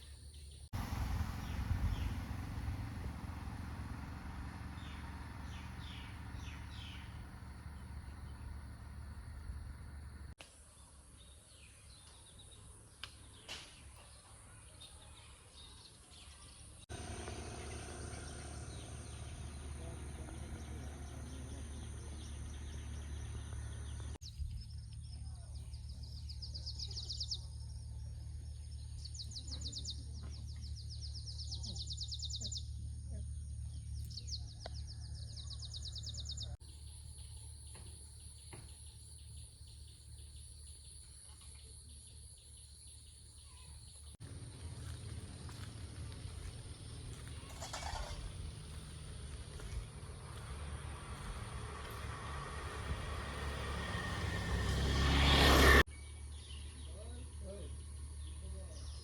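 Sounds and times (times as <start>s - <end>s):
bird singing rapid trills: 0.3s - 10.3s, 17.0s - 44.2s, 53.0s - 59.0s
low rumble of wind: 0.5s - 10.4s, 44.2s - 57.0s.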